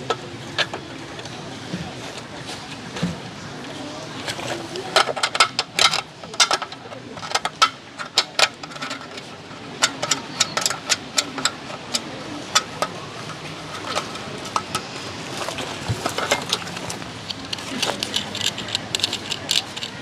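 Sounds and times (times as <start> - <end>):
hard objects clicking and clattering: 4.3 - 20.0.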